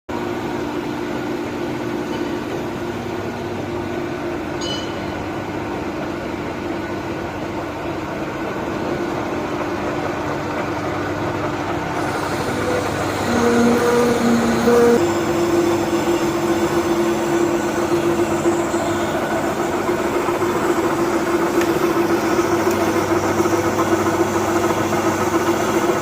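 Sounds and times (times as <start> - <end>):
metal lathe humming: 8.3 - 26.0
high squeak: 12.4 - 19.0.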